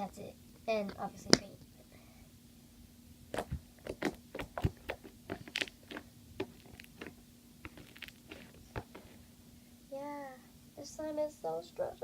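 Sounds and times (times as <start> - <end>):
slime being squished: 3.3 - 9.3.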